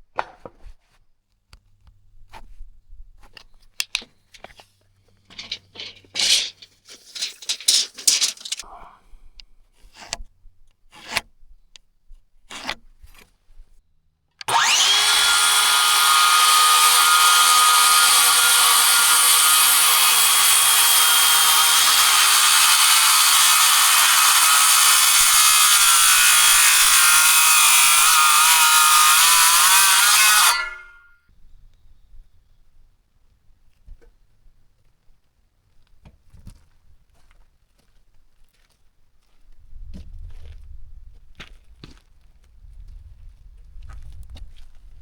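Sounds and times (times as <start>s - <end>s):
power saw cutting wood: 14.4s - 31.0s.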